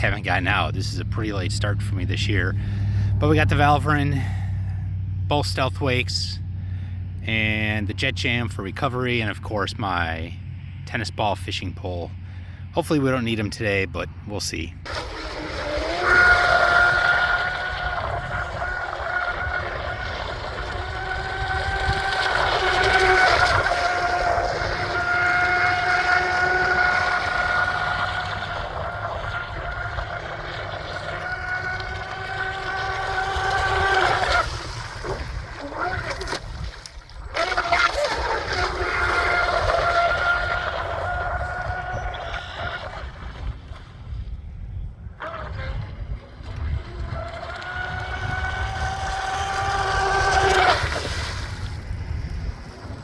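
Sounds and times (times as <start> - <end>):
wind rumble on microphone: 14.7 - 53.0
electric boat motor whining: 14.8 - 44.0, 45.1 - 53.0.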